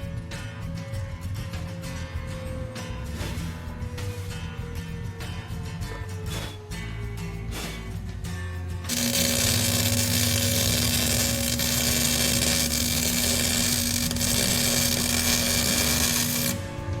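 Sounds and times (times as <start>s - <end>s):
power tool hissing and humming: 7.5s - 8.0s, 8.9s - 17.0s.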